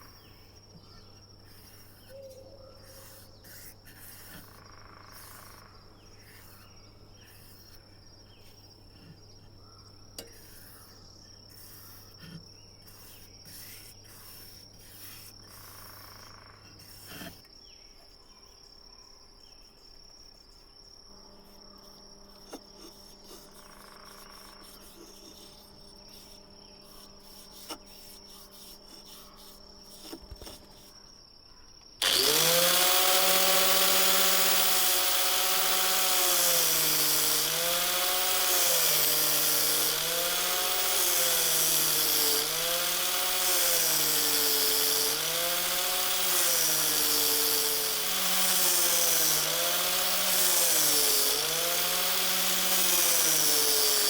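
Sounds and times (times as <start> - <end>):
power tool cutting wood: 32.0 - 54.0.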